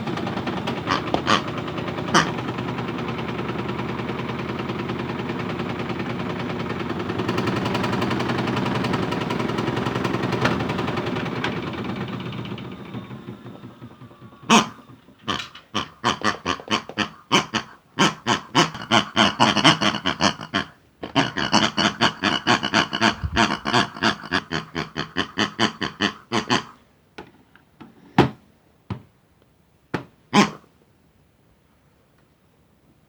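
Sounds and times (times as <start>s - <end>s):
pig grunting and oinking: 0.7s - 2.5s, 14.4s - 26.8s, 30.3s - 30.7s.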